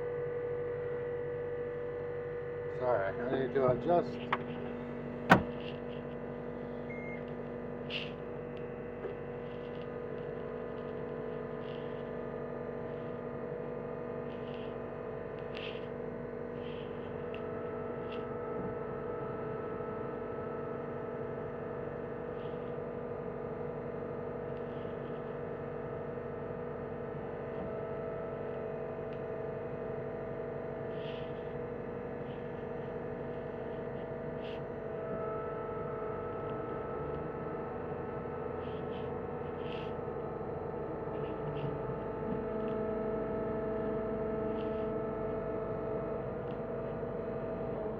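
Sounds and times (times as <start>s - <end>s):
diesel engine running: 2.7s - 7.0s.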